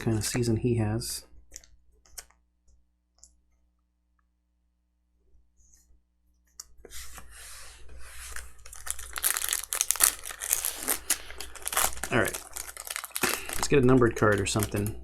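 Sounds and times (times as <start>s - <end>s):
wrapper tearing and crinkling: 8.4s - 15.0s.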